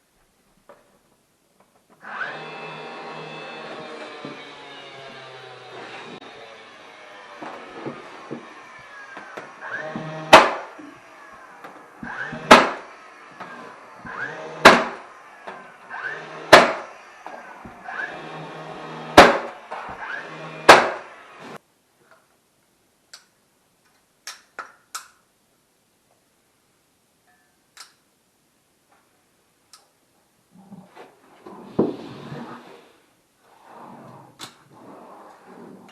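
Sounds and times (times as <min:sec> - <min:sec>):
loud sharp knocks: 0:09.3 - 0:10.8, 0:12.0 - 0:12.9, 0:14.1 - 0:15.0, 0:16.4 - 0:16.9, 0:19.0 - 0:20.0, 0:20.6 - 0:21.1.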